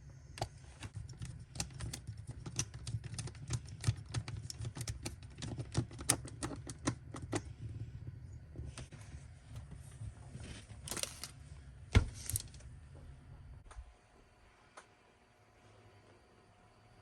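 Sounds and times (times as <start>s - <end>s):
rapid clicking and tapping: 0.4s - 8.9s.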